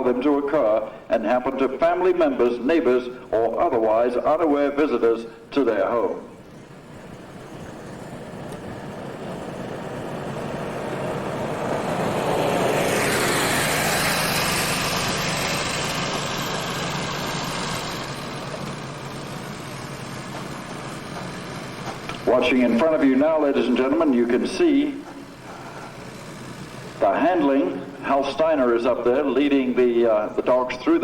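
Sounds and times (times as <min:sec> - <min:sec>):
aircraft flying past: 0:06.8 - 0:20.0.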